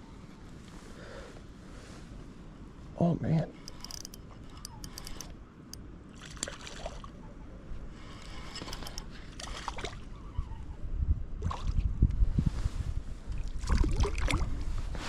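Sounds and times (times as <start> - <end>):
gear clicking: 3.6 - 5.8, 8.5 - 9.1
water sloshing and splashing: 6.1 - 7.2, 8.5 - 10.1, 11.4 - 11.9, 13.3 - 14.9.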